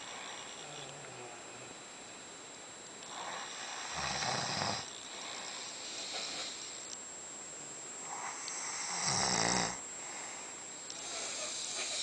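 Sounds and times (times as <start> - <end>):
person snoring: 3.1 - 6.8, 8.1 - 12.0.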